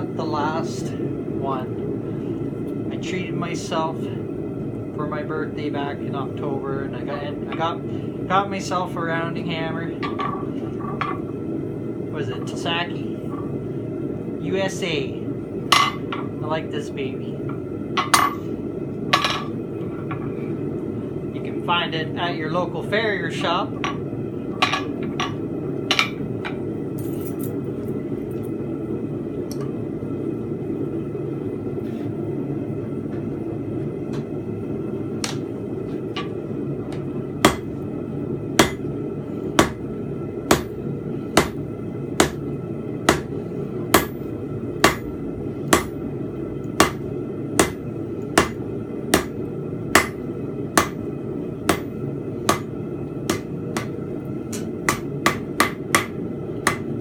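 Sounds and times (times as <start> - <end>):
hammer striking steel on anvil: 37.4 - 37.7, 38.6 - 38.8, 39.6 - 39.8, 40.5 - 40.7, 41.4 - 41.6, 42.2 - 42.4, 43.1 - 43.3, 43.9 - 44.2, 44.8 - 45.0, 45.7 - 46.0, 46.8 - 47.0, 47.6 - 47.8, 48.4 - 48.6, 49.2 - 49.4, 50.0 - 50.2, 50.8 - 51.0, 51.7 - 51.9, 52.5 - 52.7, 53.3 - 56.9.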